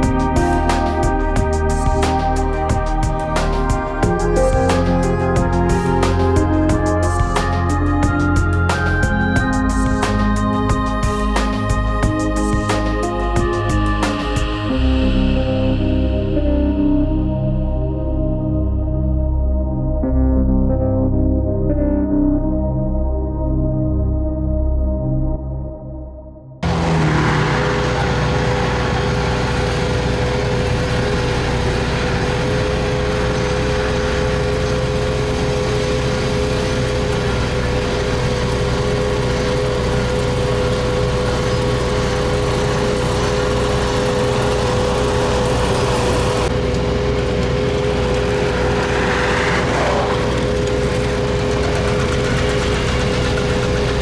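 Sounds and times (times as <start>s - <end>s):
diesel paving machinery rumbling: 0.0s - 16.1s, 26.6s - 54.0s
constant machine whine: 0.0s - 17.2s, 26.6s - 54.0s
downward sliding tone: 36.7s - 53.9s.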